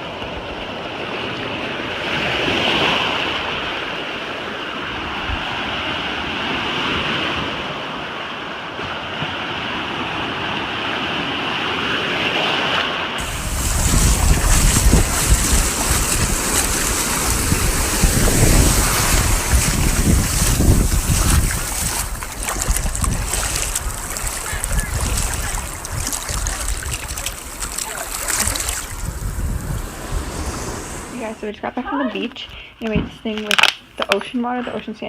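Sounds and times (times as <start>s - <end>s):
ocean surf washing on beach: 0.0s - 31.5s
wind buffeting microphone: 13.2s - 31.5s.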